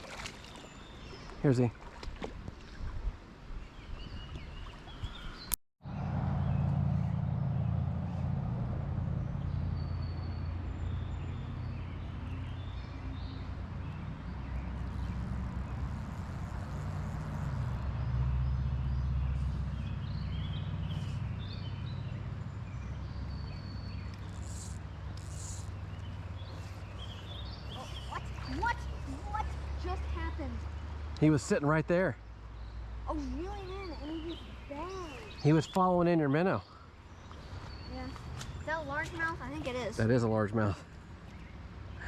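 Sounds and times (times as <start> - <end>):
low outdoor rumble: 5.8 - 31.1.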